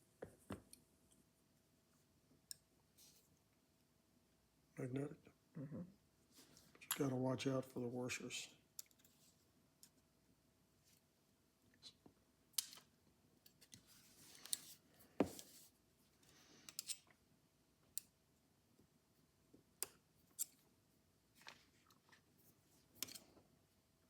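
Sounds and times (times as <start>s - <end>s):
screwdriver and metal parts clicking: 16.7s - 17.1s, 23.0s - 23.3s.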